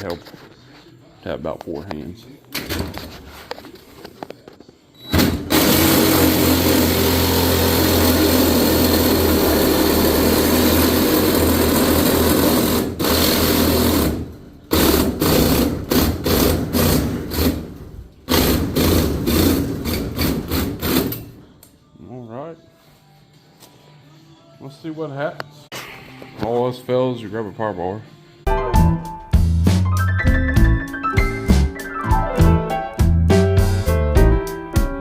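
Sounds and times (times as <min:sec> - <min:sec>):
reciprocating saw cutting sheet metal: 0:05.5 - 0:17.6.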